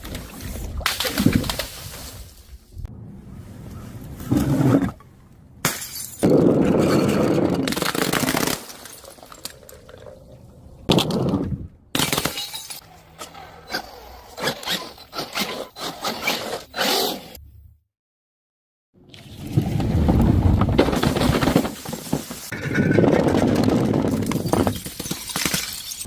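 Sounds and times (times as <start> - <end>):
glass bottles smashing: 5.6 - 9.8, 12.0 - 12.8, 24.3 - 26.0
glass shards clinking: 12.0 - 12.8, 24.4 - 26.0.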